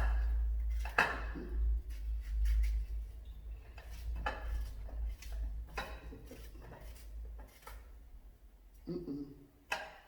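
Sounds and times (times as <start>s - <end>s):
knife slicing plantain: 0.0s - 2.8s.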